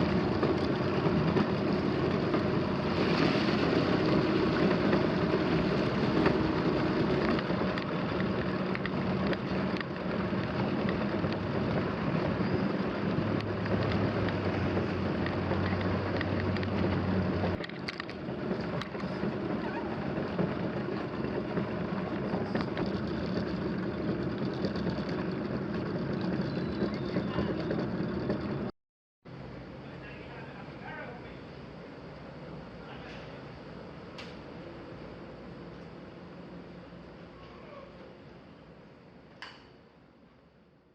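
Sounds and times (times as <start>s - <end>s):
engine running with low hum: 0.0s - 28.7s.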